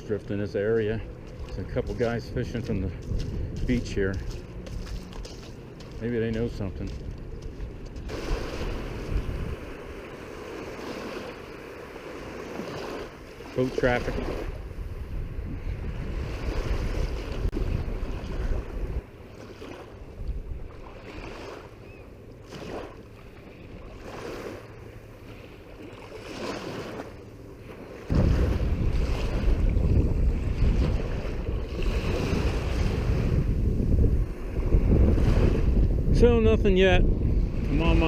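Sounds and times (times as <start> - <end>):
wind buffeting microphone: 0.0 - 12.9, 13.9 - 19.1, 19.9 - 22.0, 28.0 - 38.0
small waves washing onto shore: 0.0 - 38.0.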